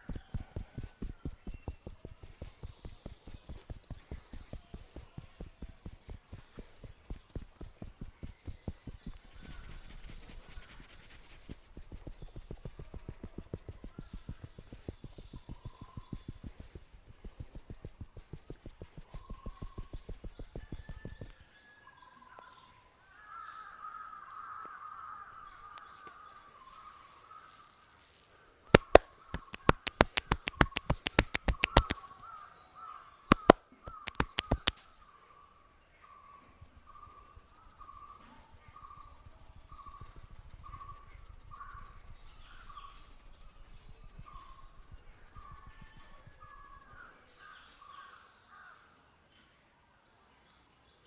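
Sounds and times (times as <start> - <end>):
sharp hand slaps: 28.8 - 32.0, 33.3 - 34.8
bird calling: 28.8 - 34.8, 36.0 - 47.1.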